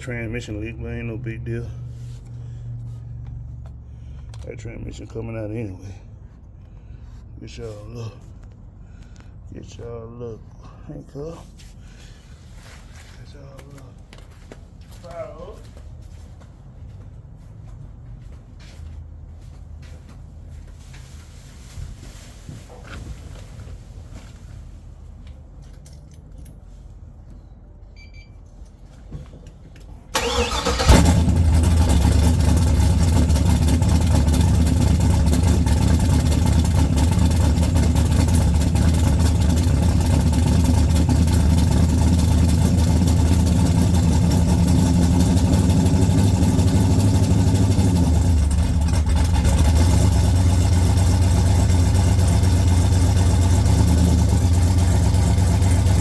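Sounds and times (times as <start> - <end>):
car engine cranking and idling: 0.0 - 11.3, 29.4 - 56.0.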